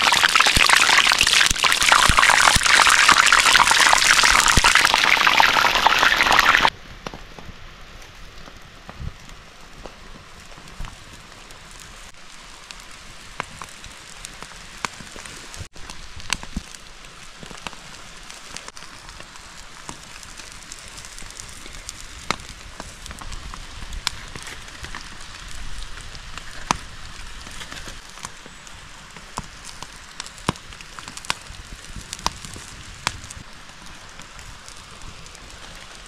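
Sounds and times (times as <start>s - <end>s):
fire popping: 0.0s - 36.0s
steady fire hiss: 0.0s - 36.0s
wood fire crackling: 0.0s - 36.0s.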